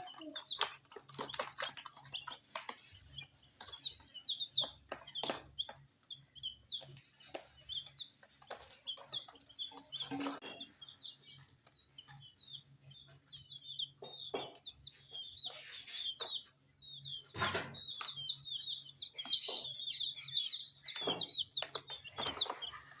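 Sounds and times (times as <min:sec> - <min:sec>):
chicks peeping: 0:00.0 - 0:23.0
knocks and rustles: 0:17.2 - 0:18.4, 0:20.9 - 0:23.0.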